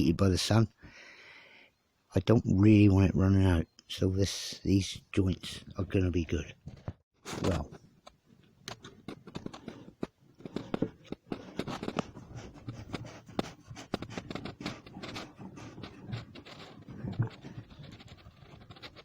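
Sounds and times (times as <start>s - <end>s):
electrical tape crackling and tearing: 8.6s - 19.0s.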